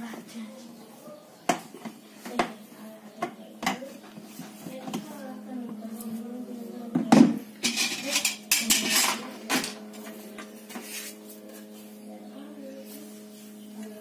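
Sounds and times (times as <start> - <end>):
steady low hum: 0.0 - 14.0
hard parts and tools clattering: 7.6 - 9.8.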